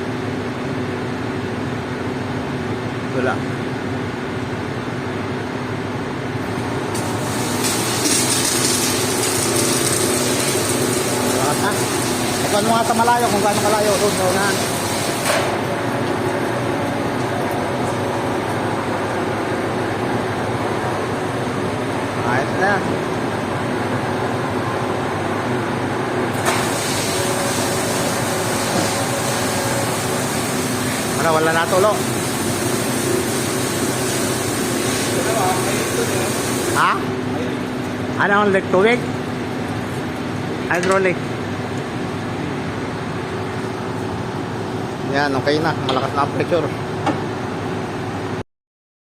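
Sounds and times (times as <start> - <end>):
high-pressure water jet hissing: 7.0 - 15.3, 26.4 - 37.0.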